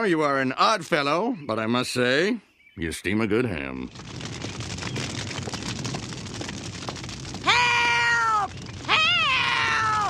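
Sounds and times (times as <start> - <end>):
crackling noise: 2.8 - 10.0
high wailing cries: 7.4 - 10.0.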